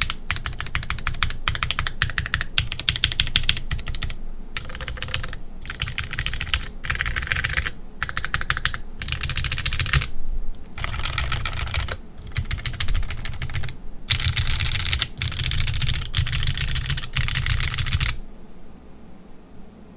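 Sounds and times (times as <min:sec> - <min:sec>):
mechanical keyboard typing: 0:00.0 - 0:10.1, 0:10.8 - 0:18.2.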